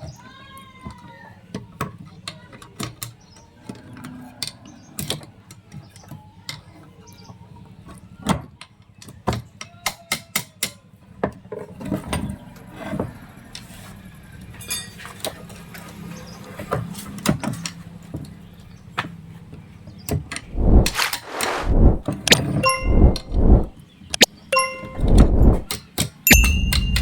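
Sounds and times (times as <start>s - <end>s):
steady low hum: 20.4s - 22.0s, 22.8s - 23.8s, 24.9s - 25.7s.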